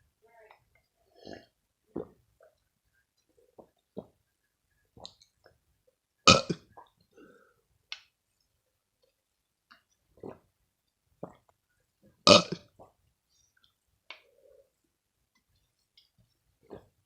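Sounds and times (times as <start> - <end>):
person burping: 6.3 - 6.8, 12.2 - 12.8.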